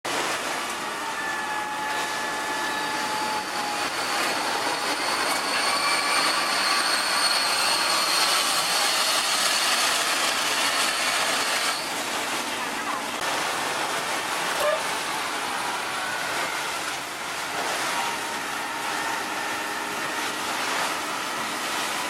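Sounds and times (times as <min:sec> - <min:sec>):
high whining tones: 0:00.6 - 0:12.0, 0:14.6 - 0:22.0
wood chipper running: 0:02.1 - 0:12.5.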